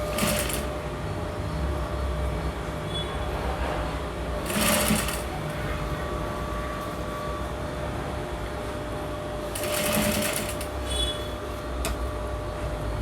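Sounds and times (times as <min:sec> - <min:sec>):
sewing machine running: 0:00.0 - 0:00.8, 0:04.4 - 0:05.5, 0:09.5 - 0:10.8.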